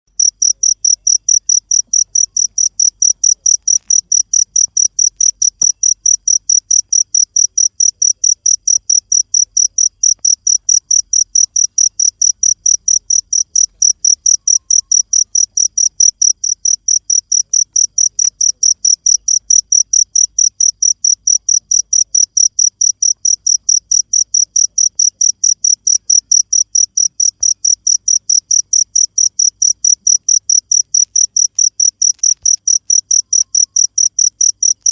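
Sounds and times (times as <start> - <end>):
cricket chirping: 0.1 - 34.9.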